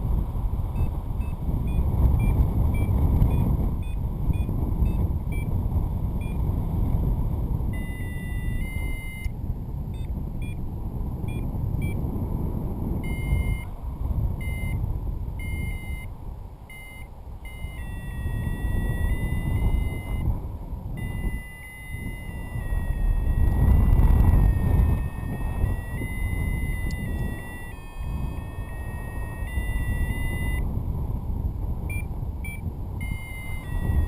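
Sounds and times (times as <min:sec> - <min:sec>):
wind buffeting microphone: 0:00.0 - 0:34.0
variometer beeping: 0:00.8 - 0:05.6, 0:06.2 - 0:06.4, 0:07.6 - 0:10.6, 0:11.2 - 0:12.0, 0:13.0 - 0:13.7, 0:14.4 - 0:16.1, 0:16.7 - 0:20.3, 0:20.9 - 0:30.7, 0:31.8 - 0:34.0.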